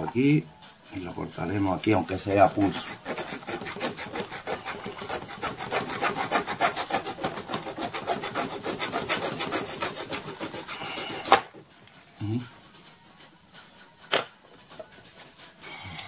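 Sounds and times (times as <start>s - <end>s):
hand saw cutting: 2.4s - 11.4s.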